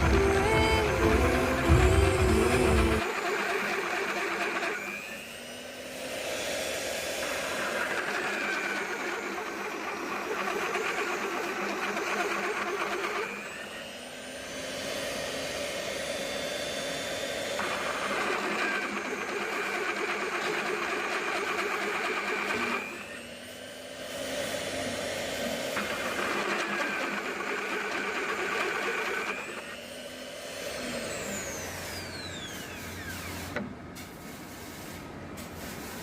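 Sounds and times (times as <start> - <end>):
electric drill motor running: 0.0 - 34.8.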